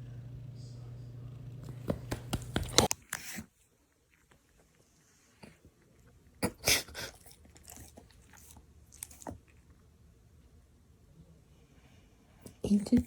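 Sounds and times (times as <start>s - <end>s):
pet chewing and crunching: 1.6s - 10.0s.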